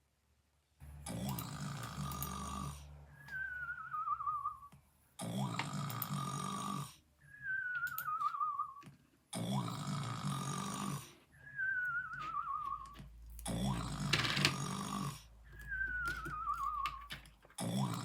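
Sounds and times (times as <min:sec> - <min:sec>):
cartoon snoring: 0:00.9 - 0:03.0, 0:05.2 - 0:07.1, 0:09.3 - 0:16.9, 0:17.6 - 0:18.0.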